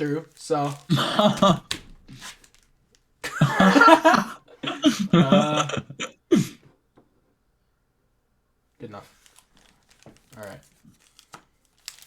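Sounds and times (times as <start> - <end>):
man laughing: 0.9 - 1.7, 3.2 - 6.6.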